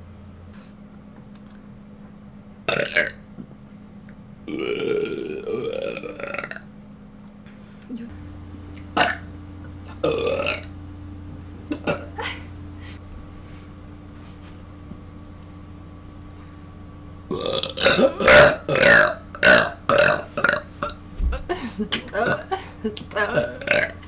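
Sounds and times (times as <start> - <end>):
person burping: 2.7 - 3.2, 4.5 - 6.6, 8.9 - 9.3, 9.9 - 10.7, 11.7 - 12.5, 17.3 - 24.0.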